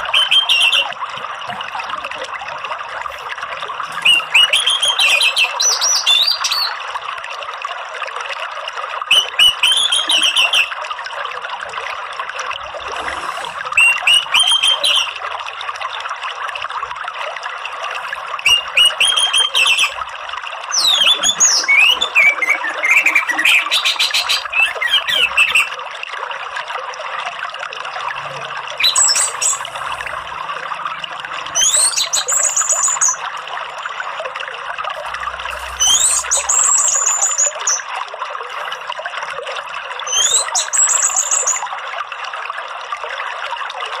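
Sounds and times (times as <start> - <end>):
bird twittering song: 0.0 - 0.9, 3.9 - 6.8, 13.8 - 15.2, 18.4 - 20.0, 20.7 - 25.7, 28.8 - 29.7, 31.6 - 33.2, 35.5 - 37.9, 40.1 - 41.6
running water rushing: 0.0 - 44.0.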